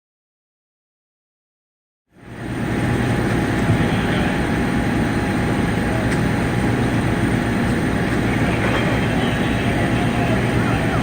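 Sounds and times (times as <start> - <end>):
low engine rumble: 2.2 - 11.0.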